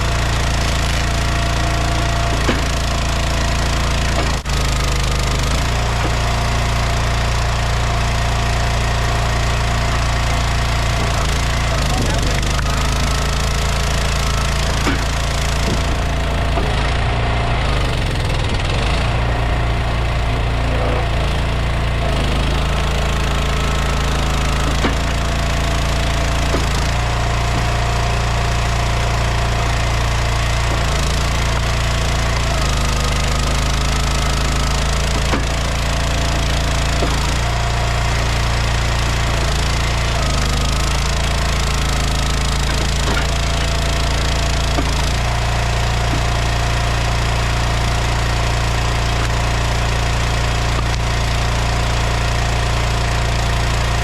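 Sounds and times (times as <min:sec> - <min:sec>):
log splitter engine running: 0:00.0 - 0:54.0.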